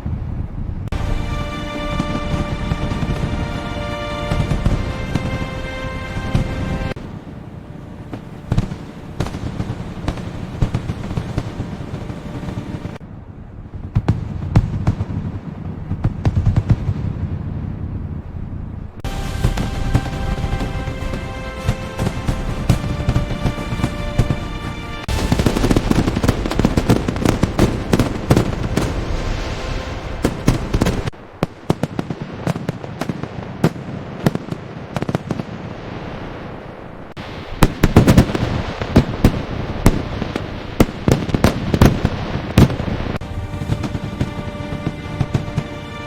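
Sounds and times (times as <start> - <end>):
fireworks bangs and crackle: 0.0 - 13.0, 13.6 - 18.3, 19.0 - 46.0
music: 0.9 - 7.0, 19.0 - 31.0, 43.2 - 46.0.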